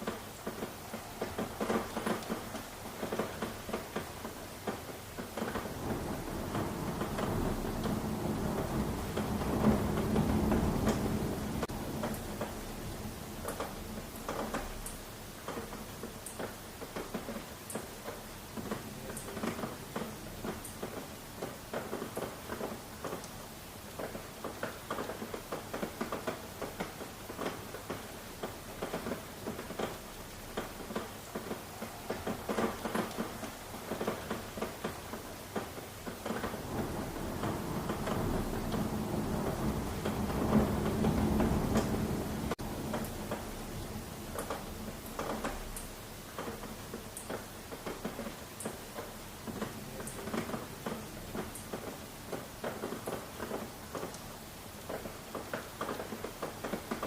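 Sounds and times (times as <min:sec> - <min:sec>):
thunder rumbling: 0:00.0 - 0:14.9, 0:28.4 - 0:54.1
rain pattering: 0:00.0 - 0:57.0.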